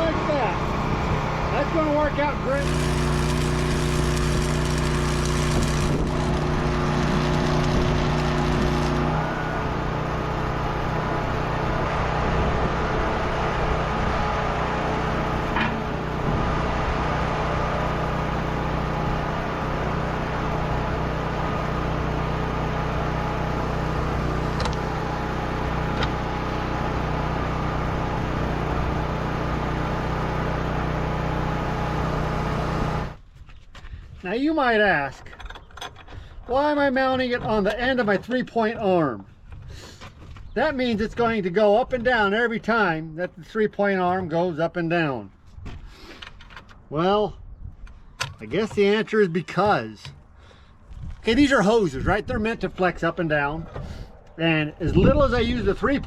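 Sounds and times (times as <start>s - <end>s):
engine running: 0.0s - 33.2s.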